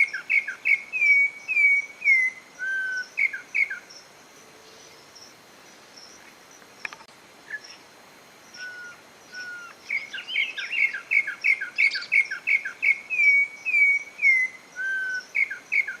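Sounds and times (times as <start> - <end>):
bird whistling song: 0.0 - 4.0, 7.5 - 7.8, 8.5 - 16.0
faint high bird chirps: 0.0 - 5.4, 8.5 - 16.0.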